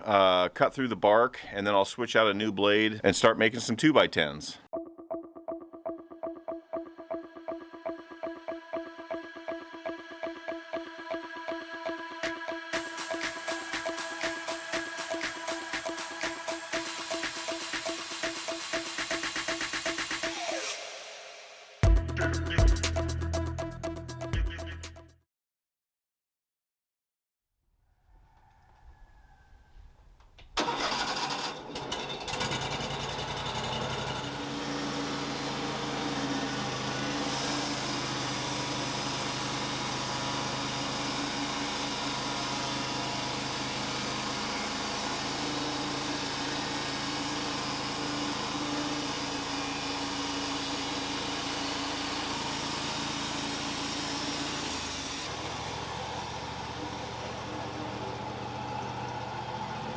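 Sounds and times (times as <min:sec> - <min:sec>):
sawmill engine running: 0:10.2 - 0:21.0, 0:30.6 - 0:59.9.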